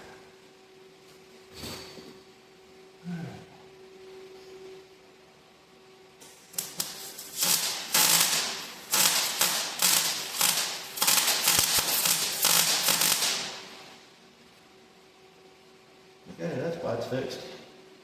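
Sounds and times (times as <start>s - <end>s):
welder crackling: 6.2s - 14.0s.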